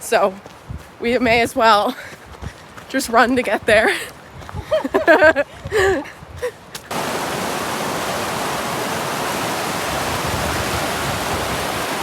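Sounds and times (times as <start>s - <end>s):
waterfall rushing: 6.9s - 12.0s.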